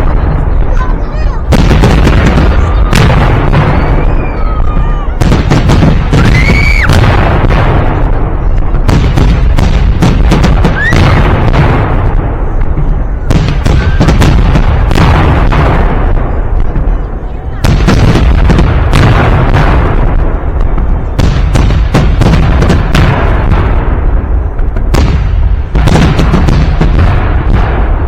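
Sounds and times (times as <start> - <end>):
fireworks bangs: 0.0 - 28.0
people shouting: 0.7 - 7.1, 10.5 - 11.5, 12.9 - 15.0.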